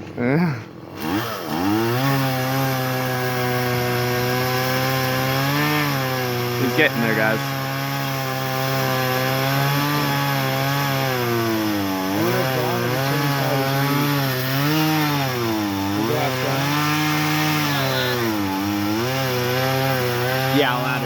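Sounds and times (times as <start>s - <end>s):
chainsaw cutting wood: 0.7s - 21.0s.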